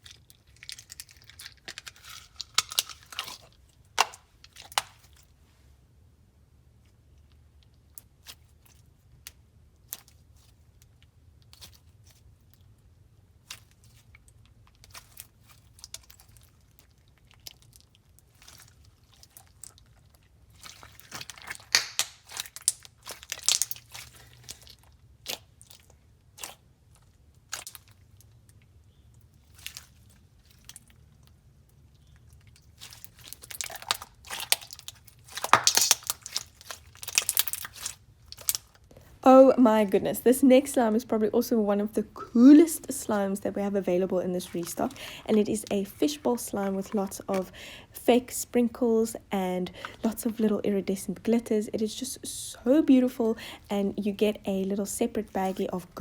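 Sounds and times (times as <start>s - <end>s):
slime squeezed with clicks and pops: 21.5s - 23.8s, 33.4s - 38.7s.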